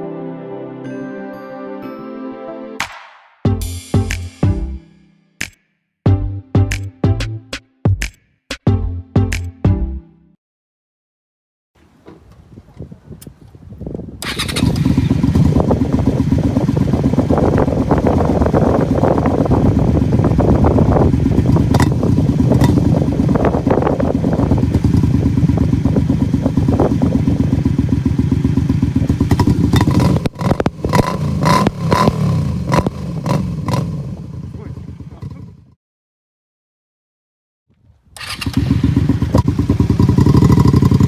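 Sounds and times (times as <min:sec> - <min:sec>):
motorcycle engine exhaust beat: 0:06.1 - 0:08.1, 0:14.8 - 0:35.5, 0:38.7 - 0:41.0.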